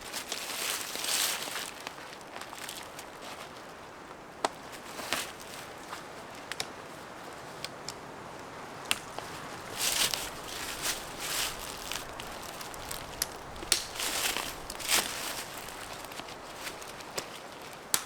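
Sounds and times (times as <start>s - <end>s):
footsteps through brush: 0.0s - 6.4s, 8.6s - 18.0s
twigs snapping: 7.6s - 18.0s.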